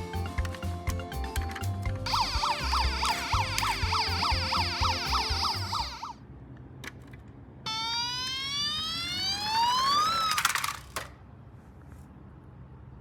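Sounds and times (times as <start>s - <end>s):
toy siren wailing: 2.0s - 6.2s, 7.7s - 10.8s.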